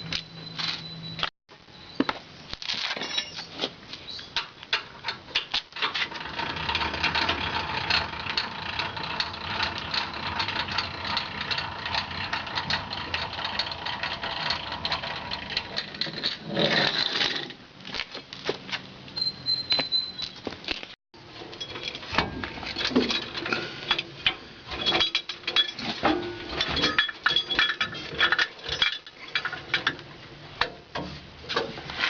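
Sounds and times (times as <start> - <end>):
metallic clicking and rattling: 4.4 - 17.4.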